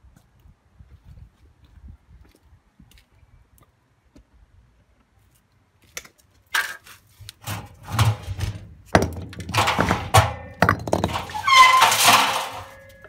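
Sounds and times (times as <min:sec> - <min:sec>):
bricks banging in washing machine drum: 0:07.4 - 0:13.0.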